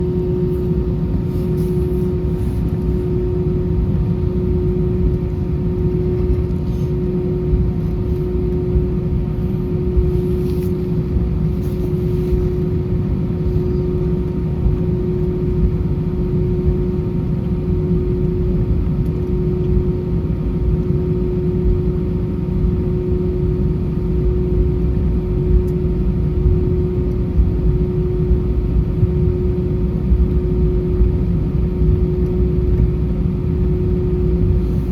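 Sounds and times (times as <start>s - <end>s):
constant hum: 0.0s - 34.9s
jet engines low rumble: 0.0s - 34.9s.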